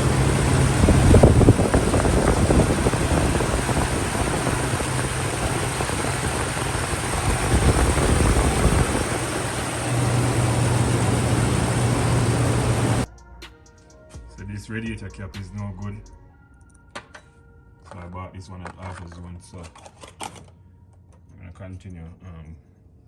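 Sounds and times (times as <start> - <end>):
engine idling: 0.0 - 13.1.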